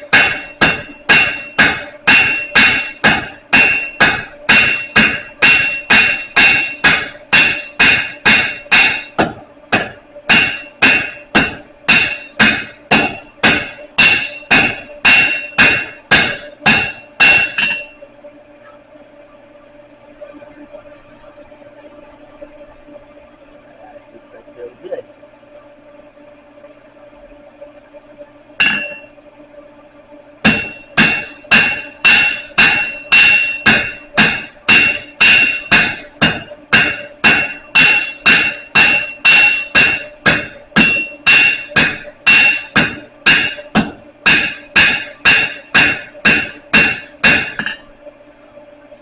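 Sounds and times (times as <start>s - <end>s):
hammer ringing on anvil: 0.0s - 18.0s, 28.6s - 29.1s, 30.4s - 47.9s.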